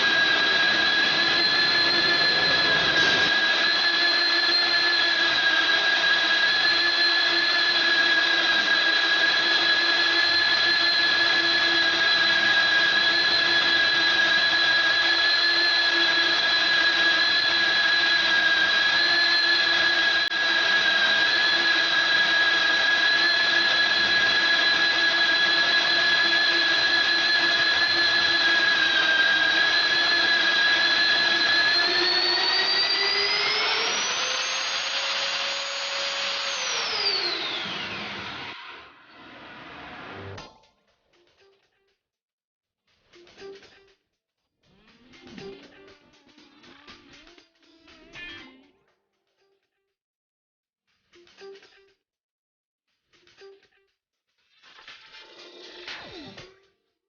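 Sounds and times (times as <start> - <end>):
magnetic drill motor whining: 0.0 - 40.4.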